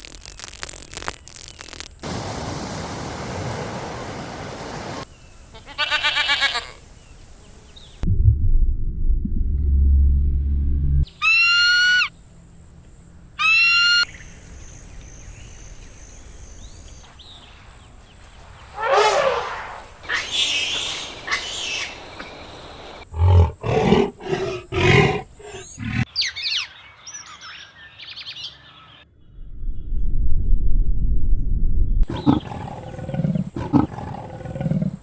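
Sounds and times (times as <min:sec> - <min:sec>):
animal calls: 0:18.8 - 0:26.1, 0:32.1 - 0:35.0.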